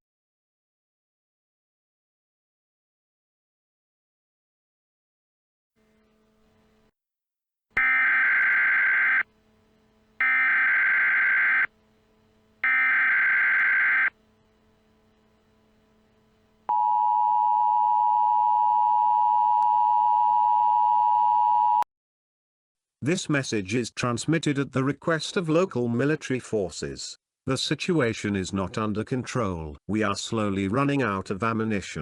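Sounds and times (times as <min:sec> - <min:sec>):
buzzy data bursts: 0:07.8 - 0:09.3, 0:10.2 - 0:11.7, 0:12.6 - 0:14.5
two-tone attention signal: 0:07.8 - 0:09.3, 0:10.2 - 0:11.7, 0:12.6 - 0:14.1.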